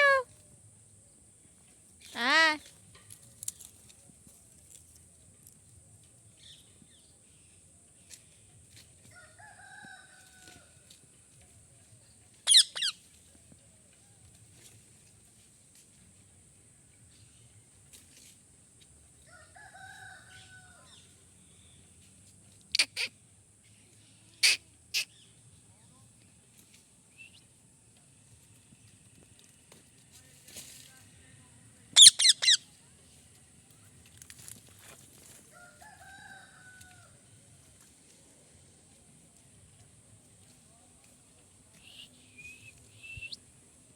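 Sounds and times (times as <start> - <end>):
parrot screeching: 0.0 - 0.2, 12.5 - 12.9, 32.0 - 32.6
drawn-out bird call: 12.5 - 13.0, 22.7 - 23.1, 32.0 - 32.6.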